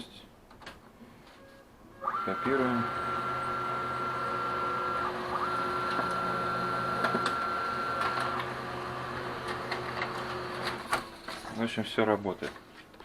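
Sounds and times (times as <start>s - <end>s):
printer motor whine: 1.5s - 11.3s.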